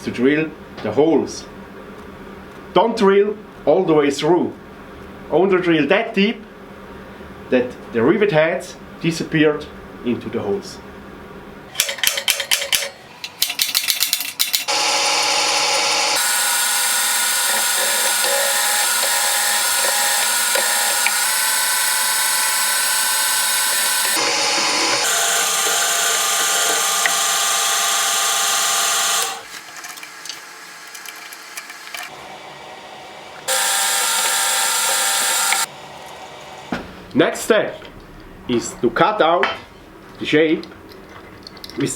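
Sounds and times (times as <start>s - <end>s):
power drill boring into steel: 14.7s - 30.4s, 33.4s - 35.7s.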